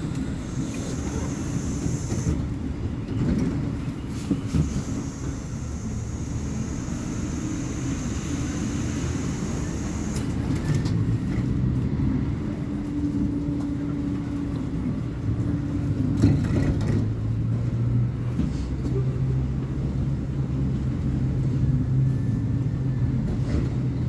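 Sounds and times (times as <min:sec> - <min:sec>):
diesel engine droning: 0:00.0 - 0:11.3.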